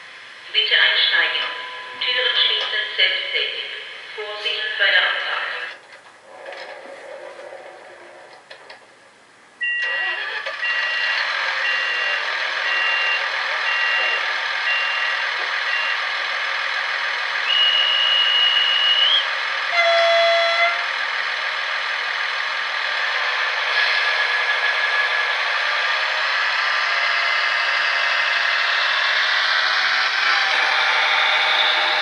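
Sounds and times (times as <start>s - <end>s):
two-tone warning beep: 9.6s - 16.0s
model train whistle blast: 17.4s - 20.9s.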